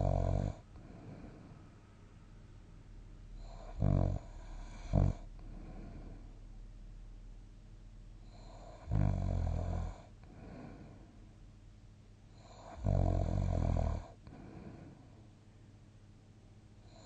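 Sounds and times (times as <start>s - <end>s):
loud rattling snores: 0.0s - 0.6s, 3.4s - 5.3s, 8.3s - 10.1s, 12.4s - 14.2s
sleep breathing: 0.0s - 1.8s, 3.4s - 6.4s, 8.2s - 11.2s, 12.3s - 15.2s.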